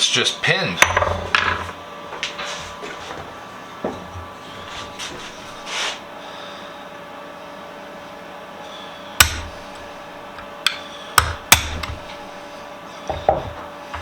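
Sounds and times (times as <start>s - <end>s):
faint steady hum: 0.0s - 14.0s
hammer tapping metal punch: 0.8s - 1.6s, 9.2s - 12.4s, 13.1s - 14.0s.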